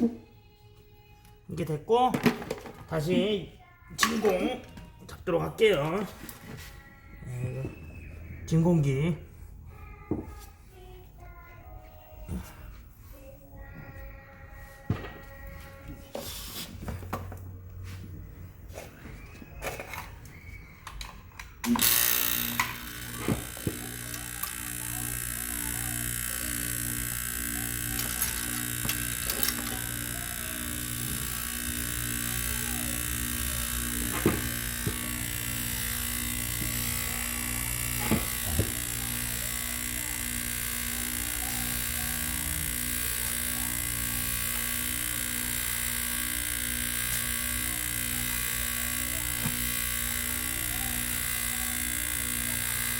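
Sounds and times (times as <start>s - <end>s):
vacuum pump motor humming: 19.5s - 52.9s.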